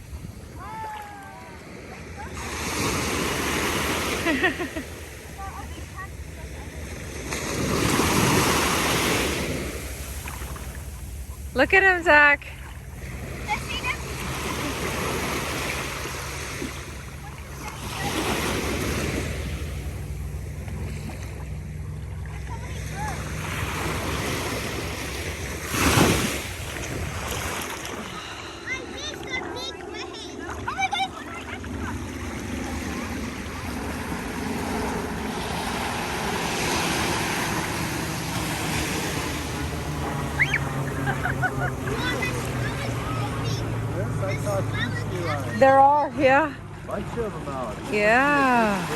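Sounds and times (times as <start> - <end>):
ocean surf washing onto beach: 0.0 - 48.9
wind rumbling on microphone: 23.3 - 28.3.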